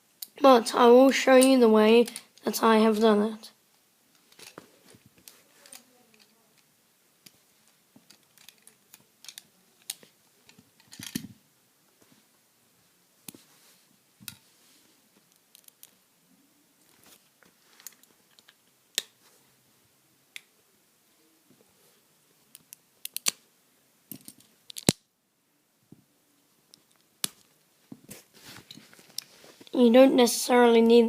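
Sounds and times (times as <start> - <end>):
plastic pieces clicking: 5.2 - 6.4, 8.0 - 11.3, 15.3 - 16.0, 22.5 - 23.4, 24.1 - 25.0.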